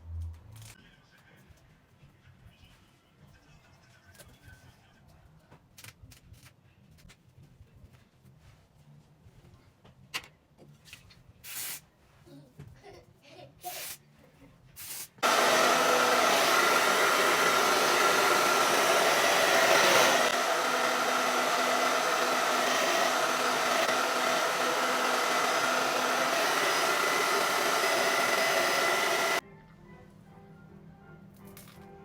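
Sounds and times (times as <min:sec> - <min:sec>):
hair dryer blowing: 0:15.2 - 0:29.4.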